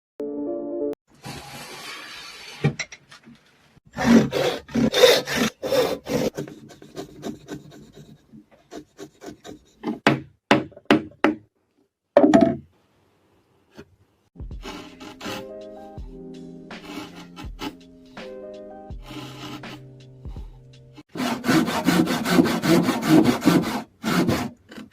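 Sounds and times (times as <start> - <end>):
hand tool rasping on wood: 3.9 - 10.0, 14.6 - 16.0, 16.7 - 17.9, 18.9 - 24.9.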